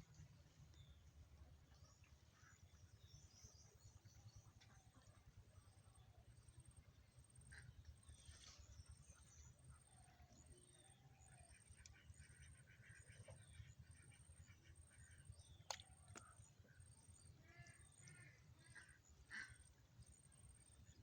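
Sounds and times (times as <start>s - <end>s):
small birds chirping: 10.4s - 21.0s.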